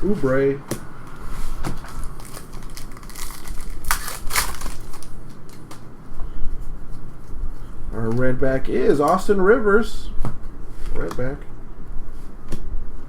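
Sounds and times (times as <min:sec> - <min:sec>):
trading cards rustling: 0:01.5 - 0:05.8.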